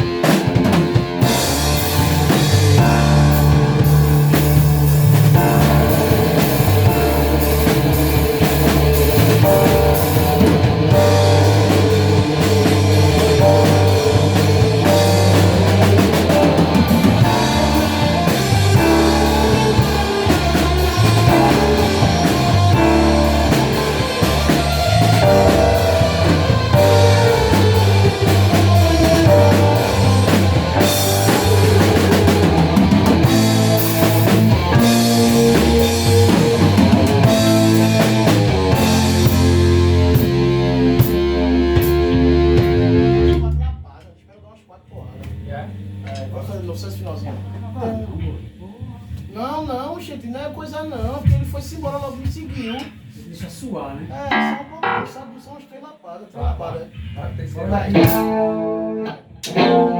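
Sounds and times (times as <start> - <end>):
rock band playing: 0.0 - 43.6, 54.3 - 55.4, 57.8 - 59.9.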